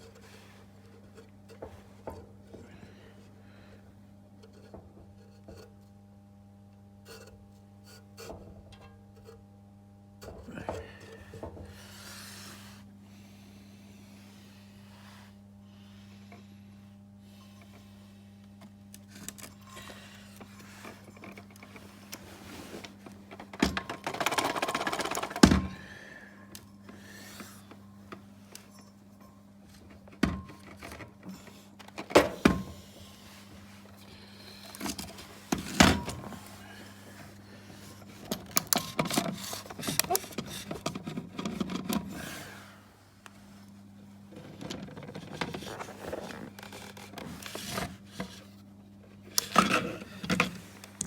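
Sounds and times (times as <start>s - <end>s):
faint steady hum: 0.0s - 51.0s
metal parts rattling and scraping: 38.2s - 41.8s.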